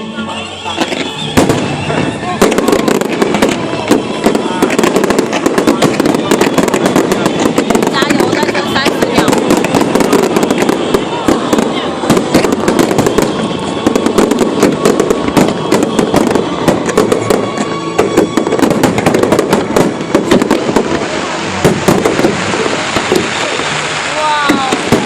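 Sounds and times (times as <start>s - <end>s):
fireworks bangs and crackles: 0.0s - 25.0s.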